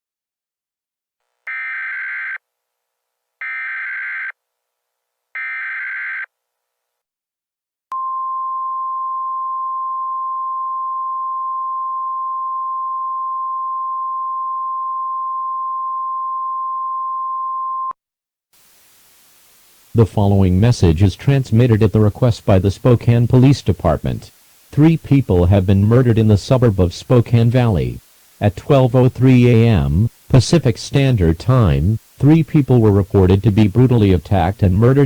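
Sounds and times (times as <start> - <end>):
faint hiss: 18.6 - 35.0.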